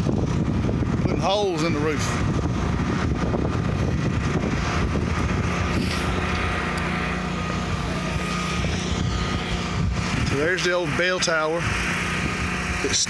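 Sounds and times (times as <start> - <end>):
motor drone: 0.0 - 13.0
faint high whine: 4.9 - 11.8.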